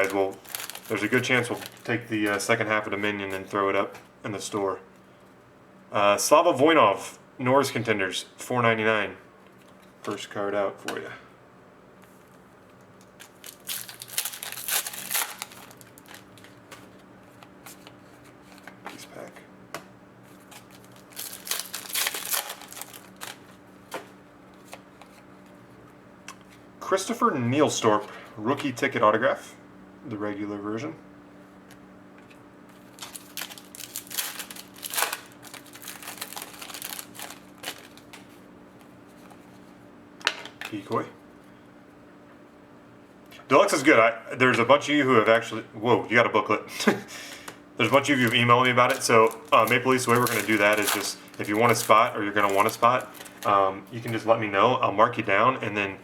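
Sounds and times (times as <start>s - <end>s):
foil wrapper crinkling: 0.0s - 2.6s, 13.0s - 19.1s, 20.3s - 23.6s, 32.7s - 38.4s, 47.8s - 54.3s.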